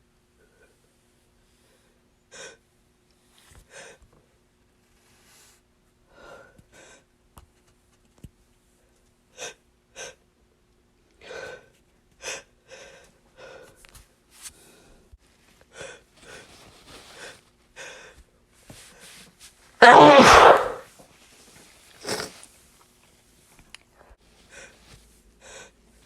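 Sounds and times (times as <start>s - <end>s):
person gasping in-breaths: 19.8s - 20.8s
sniffs: 19.8s - 20.8s, 22.0s - 22.4s.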